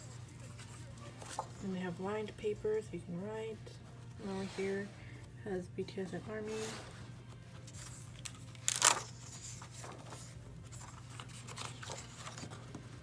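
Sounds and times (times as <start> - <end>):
paper pages rustling: 0.0 - 1.6, 7.2 - 13.0
low steady hum: 0.0 - 13.0.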